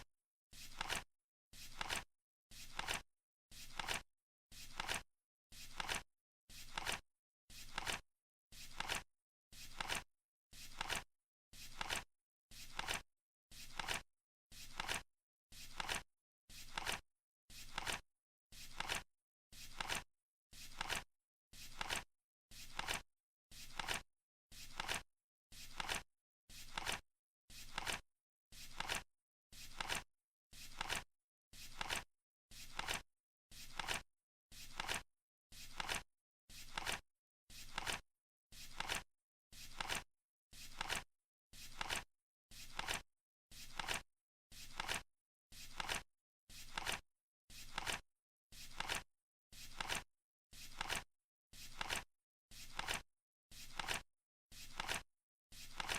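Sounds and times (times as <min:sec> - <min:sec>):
flip clock card flapping: 0:00.7 - 0:01.0, 0:01.7 - 0:02.0, 0:02.6 - 0:03.0, 0:03.7 - 0:04.0, 0:04.6 - 0:05.0, 0:05.7 - 0:06.0, 0:06.7 - 0:07.0, 0:07.7 - 0:08.0, 0:08.7 - 0:09.0, 0:09.7 - 0:10.0, 0:10.7 - 0:11.0, 0:11.7 - 0:12.0, 0:12.7 - 0:13.0, 0:13.7 - 0:14.0, 0:14.7 - 0:15.0, 0:15.7 - 0:16.0, 0:16.7 - 0:17.0, 0:18.7 - 0:19.0, 0:19.7 - 0:20.0, 0:20.7 - 0:21.0, 0:21.7 - 0:22.0, 0:22.7 - 0:23.0, 0:23.7 - 0:24.0, 0:24.7 - 0:25.0, 0:25.7 - 0:26.0, 0:26.7 - 0:27.0, 0:27.7 - 0:28.0, 0:28.7 - 0:29.0, 0:29.7 - 0:30.0, 0:30.7 - 0:31.0, 0:31.7 - 0:32.0, 0:32.7 - 0:33.0, 0:33.7 - 0:34.0, 0:34.7 - 0:35.0, 0:35.7 - 0:36.0, 0:36.7 - 0:37.0, 0:37.7 - 0:38.0, 0:38.7 - 0:39.0, 0:39.7 - 0:40.0, 0:40.7 - 0:41.0, 0:41.7 - 0:42.0, 0:42.7 - 0:43.0, 0:43.7 - 0:44.0, 0:44.7 - 0:45.0, 0:45.7 - 0:46.0, 0:46.7 - 0:47.0, 0:47.7 - 0:48.0, 0:48.7 - 0:49.0, 0:49.7 - 0:50.0, 0:50.7 - 0:51.0, 0:51.7 - 0:52.0, 0:52.7 - 0:53.0, 0:53.7 - 0:54.0, 0:54.7 - 0:55.0.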